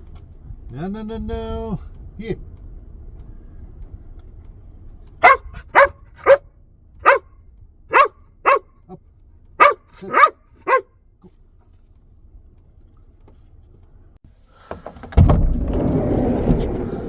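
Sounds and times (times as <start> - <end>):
dog barking: 5.2 - 6.4, 7.0 - 7.3, 7.9 - 8.7, 9.6 - 10.9.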